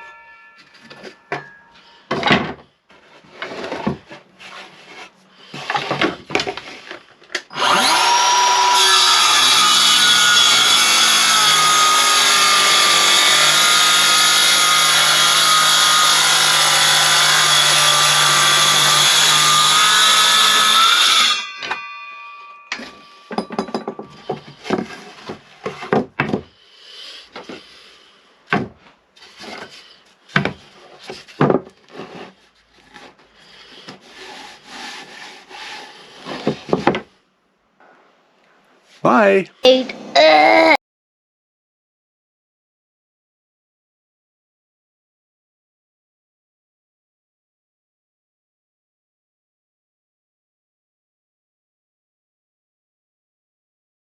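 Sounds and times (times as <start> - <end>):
wood knocking and handling: 0.7 - 7.4, 22.7 - 26.5, 28.5 - 33.2, 33.8 - 37.1
circular saw cutting: 7.5 - 25.3.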